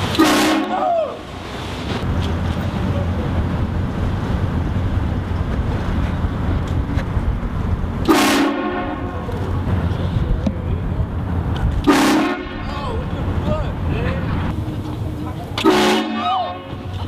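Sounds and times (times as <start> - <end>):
car driving rumble: 0.0 - 17.0
air train horn blast: 0.1 - 1.1, 8.0 - 9.3, 11.8 - 12.8, 15.6 - 17.0.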